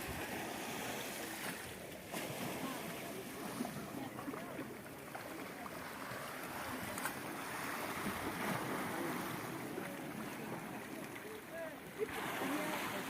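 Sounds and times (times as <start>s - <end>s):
sea waves washing onto shore: 0.0s - 13.0s.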